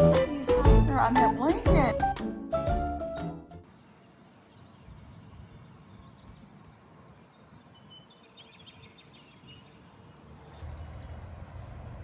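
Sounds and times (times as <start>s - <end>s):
birds chirping in trills: 3.7s - 11.3s.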